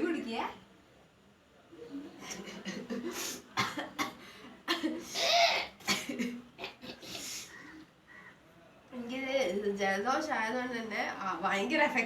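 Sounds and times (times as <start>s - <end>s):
person coughing and spluttering: 3.6s - 7.2s.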